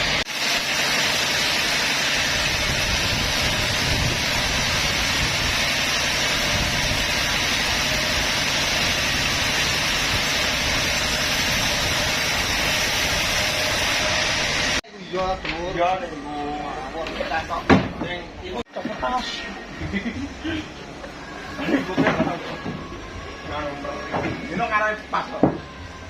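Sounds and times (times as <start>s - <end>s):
bandsaw running: 0.0s - 14.8s.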